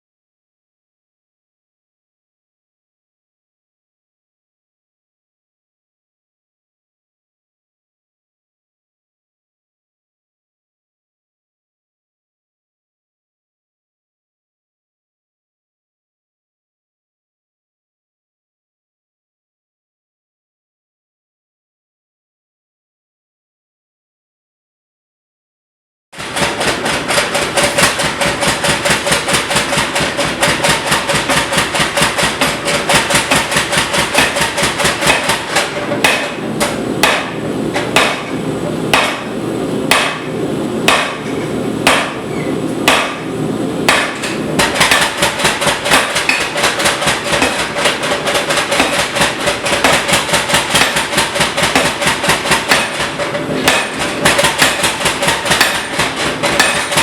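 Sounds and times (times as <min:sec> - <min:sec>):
hammer striking anvil: 0:26.2 - 0:42.3, 0:42.9 - 0:43.3, 0:43.9 - 0:57.0
anvil ringing: 0:53.7 - 0:57.0.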